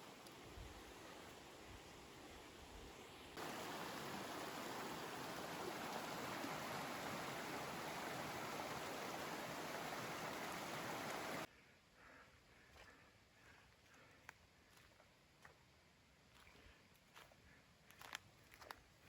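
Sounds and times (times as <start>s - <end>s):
flowing water rushing: 0.0s - 11.5s.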